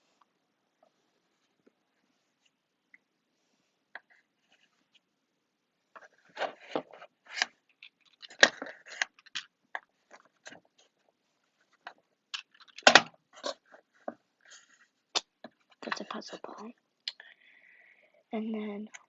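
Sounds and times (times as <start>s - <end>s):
fidget toys clicking and knocking: 7.3s - 10.5s, 11.9s - 13.6s.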